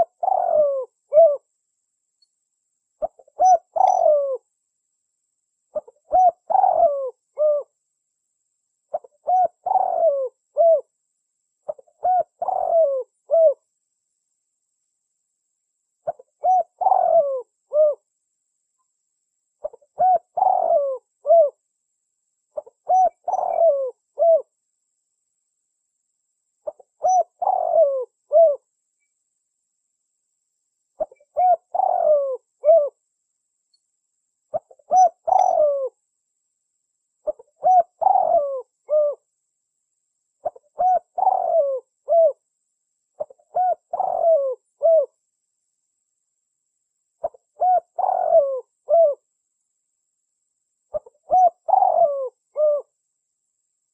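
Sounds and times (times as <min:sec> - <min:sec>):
dove cooing: 0:00.0 - 0:01.5, 0:03.0 - 0:04.4, 0:05.7 - 0:07.8, 0:08.9 - 0:10.9, 0:11.6 - 0:13.6, 0:16.0 - 0:18.1, 0:19.6 - 0:21.6, 0:22.6 - 0:24.5, 0:26.6 - 0:28.7, 0:31.0 - 0:33.0, 0:34.5 - 0:36.0, 0:37.2 - 0:39.2, 0:40.4 - 0:42.4, 0:43.2 - 0:45.2, 0:47.2 - 0:49.2, 0:50.9 - 0:52.9.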